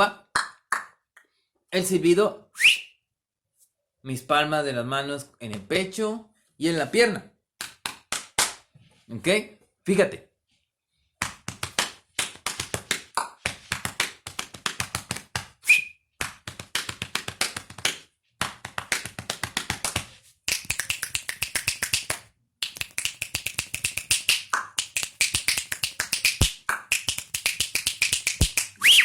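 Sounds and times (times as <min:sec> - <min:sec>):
person whistling: 0:02.6 - 0:03.0, 0:15.6 - 0:16.0, 0:28.8 - 0:29.0
palms slapping body: 0:07.6 - 0:08.8, 0:11.2 - 0:28.8.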